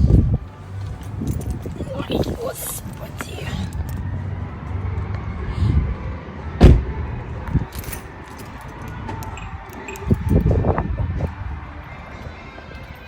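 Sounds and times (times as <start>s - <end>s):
loud thump: 6.6s - 6.9s.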